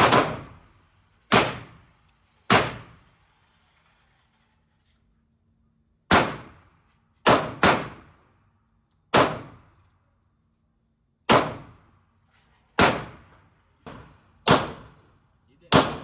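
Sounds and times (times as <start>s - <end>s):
pistol shots echoing indoors: 6.1s - 8.3s, 15.7s - 16.0s.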